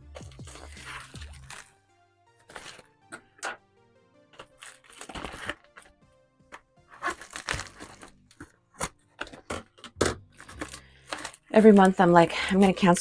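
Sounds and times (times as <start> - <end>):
soft background music: 0.0 - 13.0
packaging crinkling: 0.2 - 1.7, 2.4 - 3.2, 4.3 - 6.0, 6.9 - 12.9.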